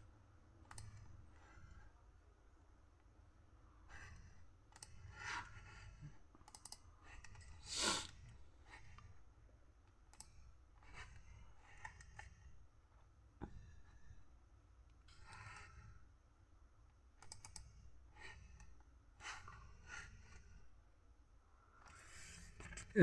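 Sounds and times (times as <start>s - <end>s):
mouse and keyboard clicks: 17.2s - 17.7s.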